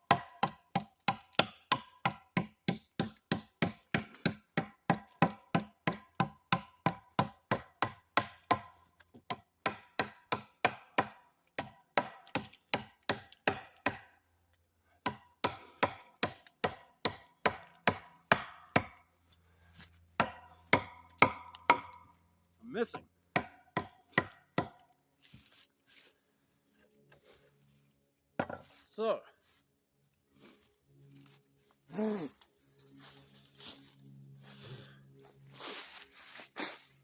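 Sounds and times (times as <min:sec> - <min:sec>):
knife chopping into wood: 0:00.1 - 0:14.1, 0:20.2 - 0:22.0, 0:23.3 - 0:25.4.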